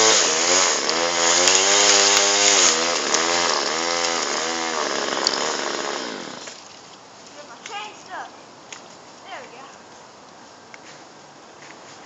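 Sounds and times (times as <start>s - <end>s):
chainsaw cutting tree: 0.0s - 6.6s.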